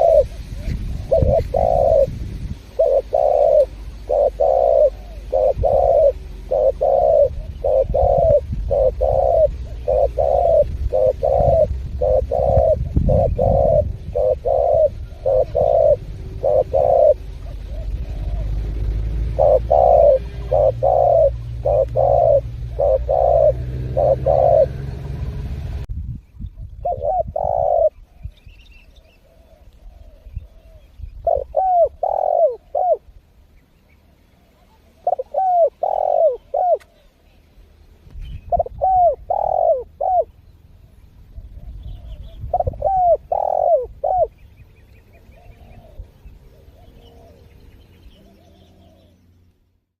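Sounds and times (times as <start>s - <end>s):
dove cooing: 0.0s - 25.8s, 26.8s - 33.1s, 34.0s - 37.4s, 38.3s - 49.3s
low hum: 0.0s - 26.8s.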